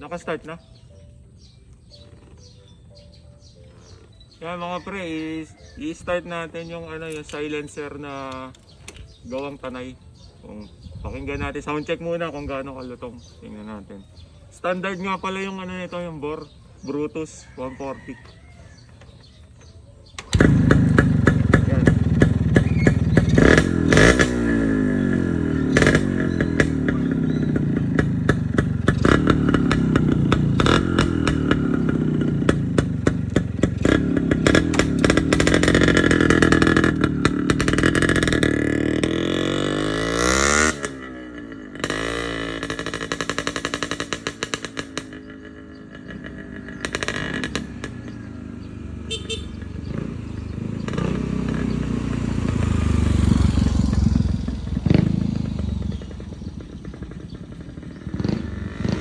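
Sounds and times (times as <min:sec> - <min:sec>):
motorcycle engine revving: 0:00.0 - 0:59.0
sharp exhaust pops: 0:19.1 - 0:59.0.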